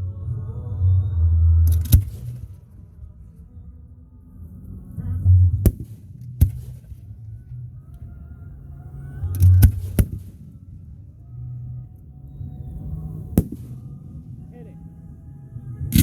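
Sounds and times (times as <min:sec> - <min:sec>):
low rumble: 0:00.0 - 0:16.0
fireworks bangs and cracks: 0:13.4 - 0:14.0.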